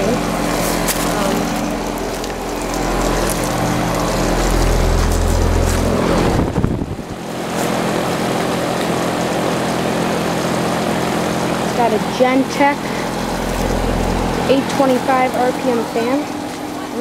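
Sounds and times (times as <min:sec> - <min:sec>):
air conditioner compressor hum: 0:00.0 - 0:17.0
condenser fan air rush: 0:00.0 - 0:17.0
wind rumble on microphone: 0:04.9 - 0:07.2.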